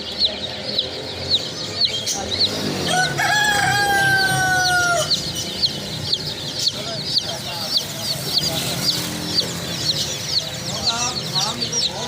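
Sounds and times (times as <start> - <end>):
baby chicks peeping: 0.0 - 12.0
rooster crowing: 2.8 - 5.4.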